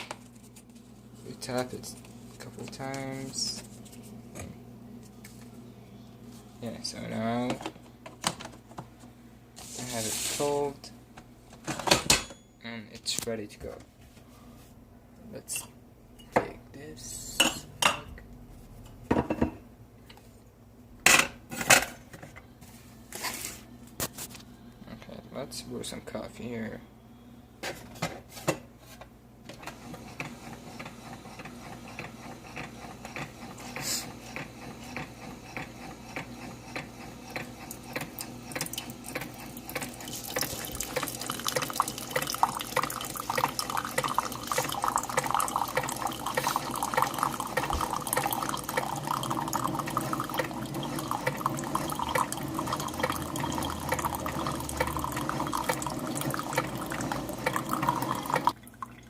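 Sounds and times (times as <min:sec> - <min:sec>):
coffee brewer running: 0:01.2 - 0:04.6, 0:29.5 - 0:59.0
coffee dripping into a mug: 0:38.6 - 0:59.0.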